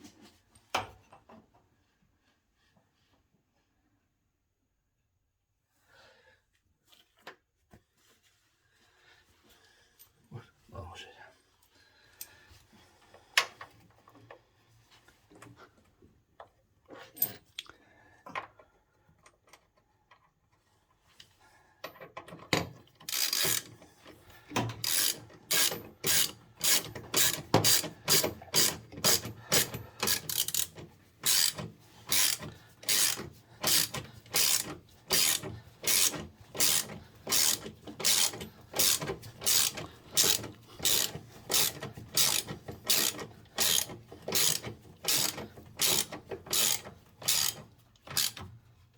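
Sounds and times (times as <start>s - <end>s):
ratchet wrench clicking: 23.0s - 23.8s, 24.8s - 48.4s.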